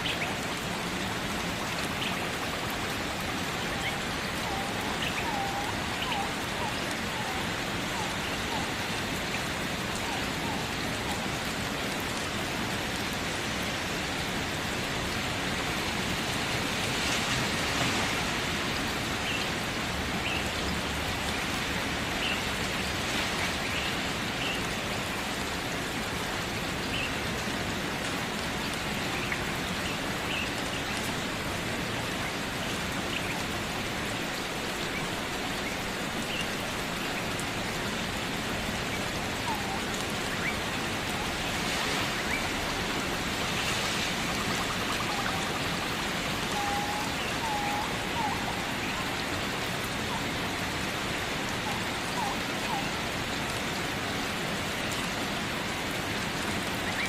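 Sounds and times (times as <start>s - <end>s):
steady rain: 0.0s - 57.0s.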